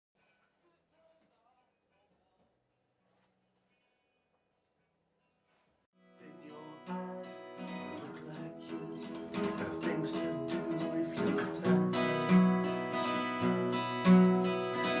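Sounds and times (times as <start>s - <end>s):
acoustic guitar strumming chords: 6.0s - 15.0s.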